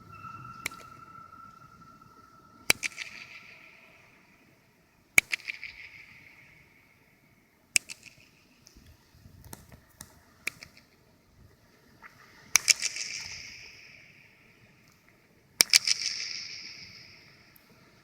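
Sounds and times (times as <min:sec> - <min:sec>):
impacts with ringing echo: 0:00.0 - 0:04.8.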